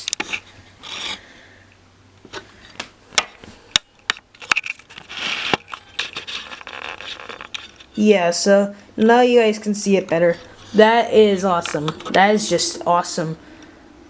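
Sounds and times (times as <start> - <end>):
rustling: 2.2 - 8.2.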